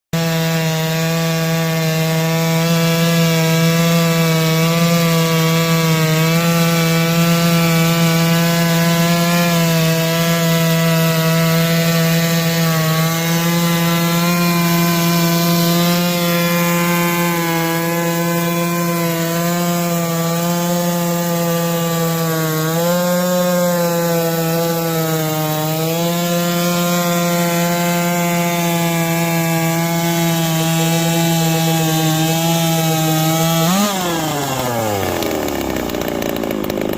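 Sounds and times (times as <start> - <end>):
chainsaw cutting log: 0.1 - 36.9.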